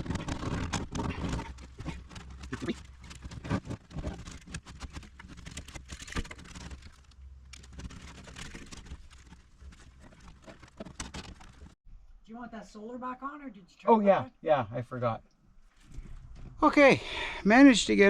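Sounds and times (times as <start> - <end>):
wires rustling behind plastic trim: 0.0 - 11.8.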